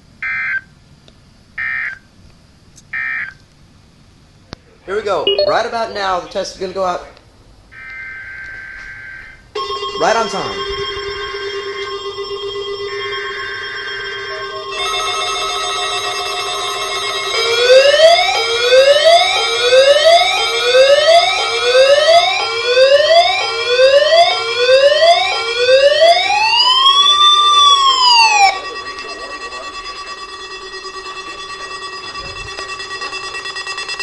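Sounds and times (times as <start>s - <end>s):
steady tones: 5.0s - 7.0s, 10.0s - 34.0s
electronic siren sweeping: 7.8s - 34.0s.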